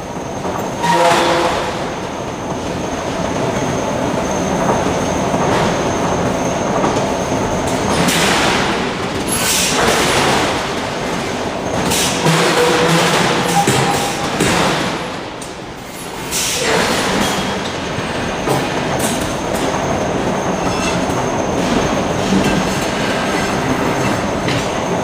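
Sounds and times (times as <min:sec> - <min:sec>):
industrial machinery din: 0:07.9 - 0:19.7.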